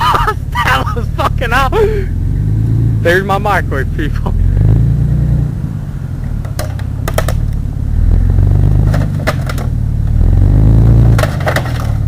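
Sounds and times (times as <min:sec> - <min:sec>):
pickup truck engine rumbling: 0:00.0 - 0:12.0
crunching clicks and knocks: 0:06.4 - 0:07.6, 0:08.8 - 0:09.8, 0:11.0 - 0:12.0.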